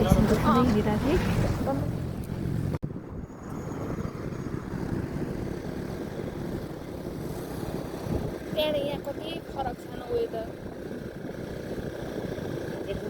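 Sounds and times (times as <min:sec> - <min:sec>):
vehicle rumbling on road: 0:00.0 - 0:13.0.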